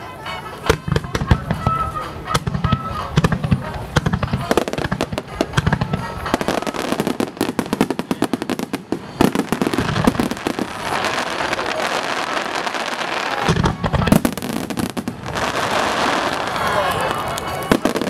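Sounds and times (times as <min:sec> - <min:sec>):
fireworks crackling: 0:00.0 - 0:18.0
fireworks bangs: 0:00.4 - 0:18.0.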